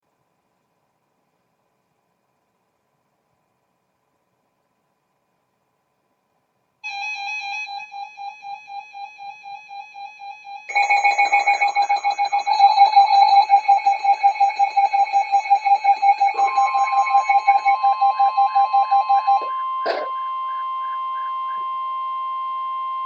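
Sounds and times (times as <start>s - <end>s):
steady higher alert tone: 6.8s - 21.6s
pulsing electronic beep: 6.9s - 23.0s.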